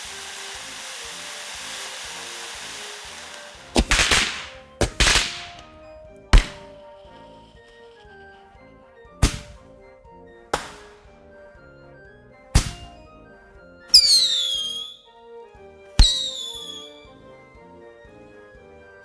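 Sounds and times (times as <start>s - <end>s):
firework bangs: 0.0s - 8.1s, 9.2s - 9.7s, 10.6s - 11.2s, 12.6s - 13.1s, 13.9s - 15.0s, 16.0s - 17.1s
falling firework whistle: 0.0s - 8.3s, 10.6s - 11.2s, 12.6s - 13.3s, 13.9s - 15.2s, 16.0s - 17.3s
background music: 0.0s - 19.0s.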